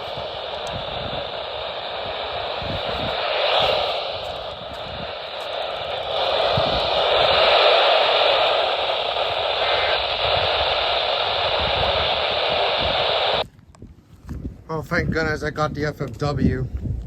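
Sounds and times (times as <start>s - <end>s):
radio static hissing: 0.0s - 13.4s.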